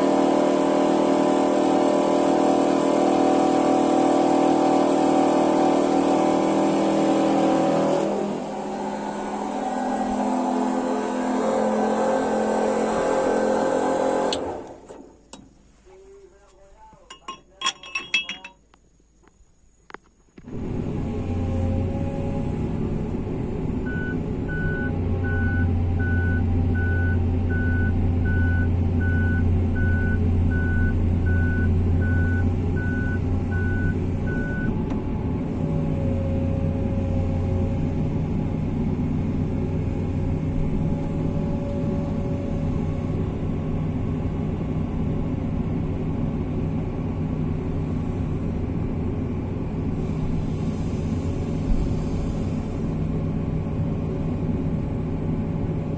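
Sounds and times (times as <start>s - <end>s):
diesel engine running: 0.0s - 18.5s, 20.4s - 55.9s
travel alarm beeping: 23.9s - 34.7s.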